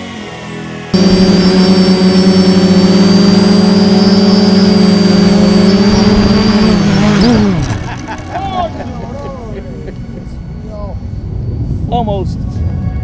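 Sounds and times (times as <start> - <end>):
thin high whine: 1.0 - 7.9
quadcopter motors buzzing: 1.0 - 8.2.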